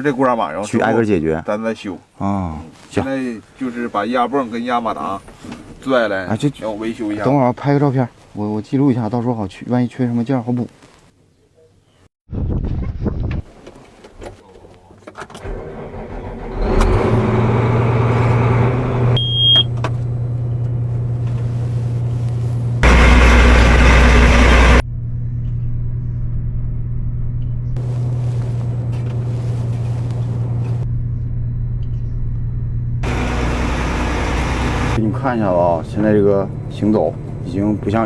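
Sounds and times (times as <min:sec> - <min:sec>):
combine harvester diesel engine: 0:15.4 - 0:24.8, 0:27.8 - 0:30.8, 0:33.0 - 0:38.0
short high beep: 0:19.2 - 0:19.7.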